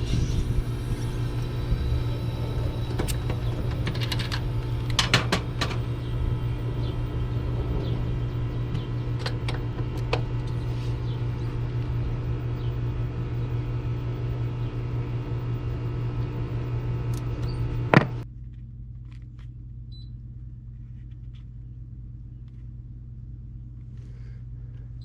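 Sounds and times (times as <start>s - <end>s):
machine humming: 0.0s - 18.3s
low hum: 0.0s - 25.0s.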